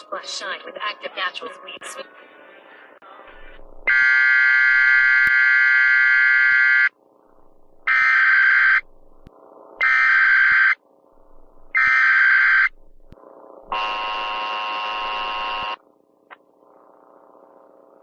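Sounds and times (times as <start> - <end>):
harsh electronic data bursts: 11.7 - 12.8, 13.7 - 15.8.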